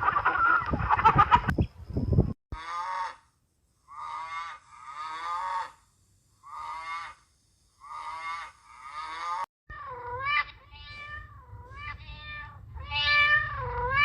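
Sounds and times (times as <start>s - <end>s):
farm animal bleating: 6.5s - 7.2s, 7.8s - 9.5s.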